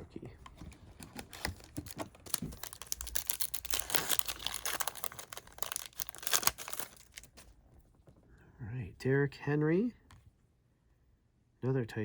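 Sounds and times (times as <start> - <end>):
cards being handled: 0.4 - 7.5
wrapper tearing and crinkling: 1.1 - 7.5.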